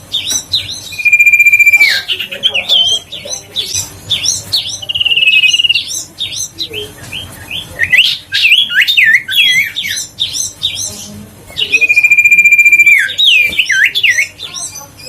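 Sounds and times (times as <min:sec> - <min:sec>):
bird singing chirps and whistles: 0:00.0 - 0:10.9, 0:11.5 - 0:14.9.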